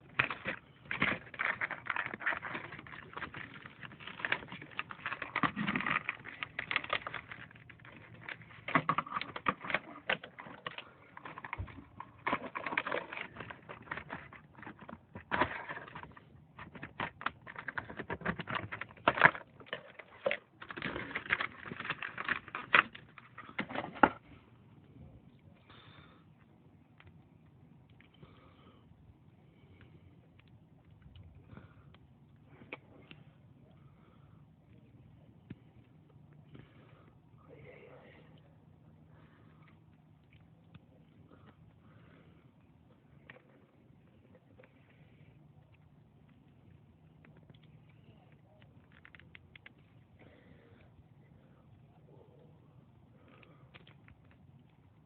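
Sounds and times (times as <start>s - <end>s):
packaging clicking and crinkling: 0.0s - 24.4s, 39.0s - 55.0s.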